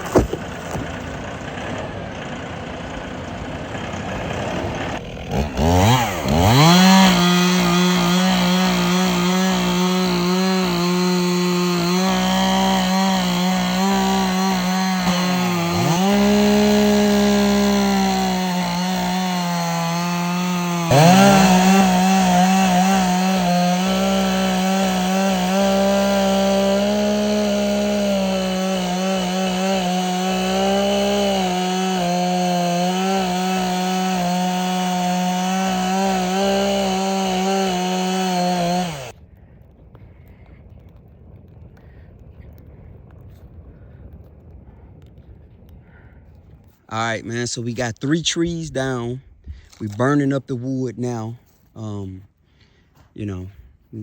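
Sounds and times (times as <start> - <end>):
chainsaw cutting wood: 0.0 - 39.2.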